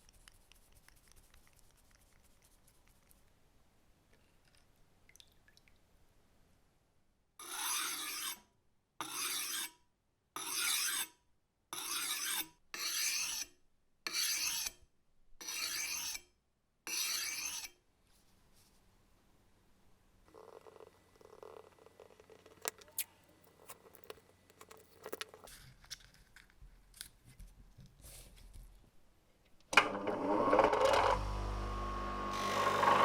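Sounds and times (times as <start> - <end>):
rasping abrasion on cleaver: 9.0 - 9.7, 11.8 - 13.5.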